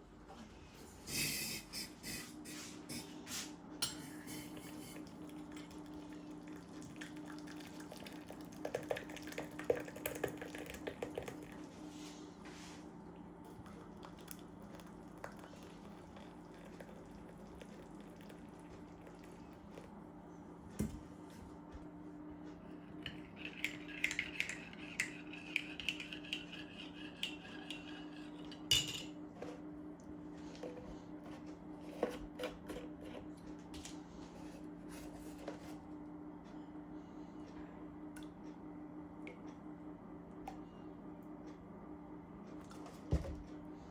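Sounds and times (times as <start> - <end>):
steady low hum: 0.0 - 43.9
teaspoon stirring in a cup: 23.1 - 28.7.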